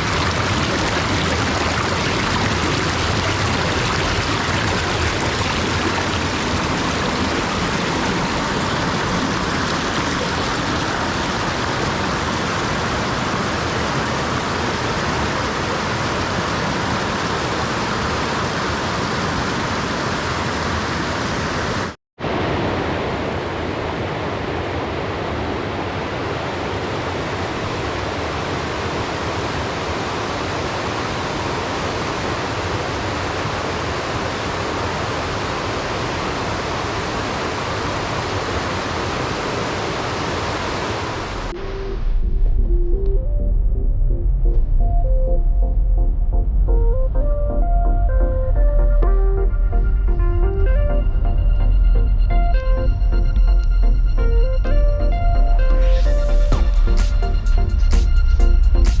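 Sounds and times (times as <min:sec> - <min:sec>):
waterfall roaring: 0:00.0 - 0:41.6.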